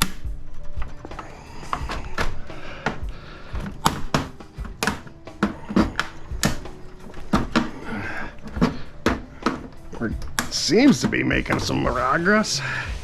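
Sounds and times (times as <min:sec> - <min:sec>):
computer case being pounded apart: 0:03.6 - 0:07.8.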